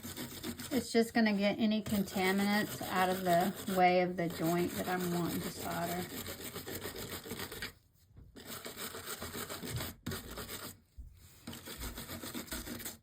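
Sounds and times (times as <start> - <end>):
wire brush scrubbing metal: 0.0 - 7.7.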